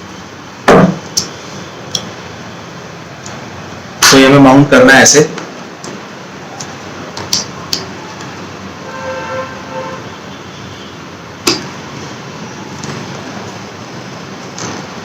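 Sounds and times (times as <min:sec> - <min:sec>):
steady background noise: 0:00.0 - 0:15.0
faint pitched tone: 0:08.8 - 0:10.5.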